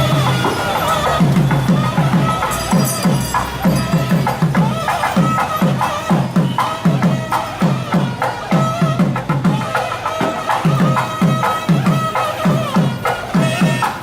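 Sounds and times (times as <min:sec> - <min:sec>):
drums beating fast rhythm: 0:00.0 - 0:14.0
reed wind instrument high notes: 0:00.0 - 0:14.0.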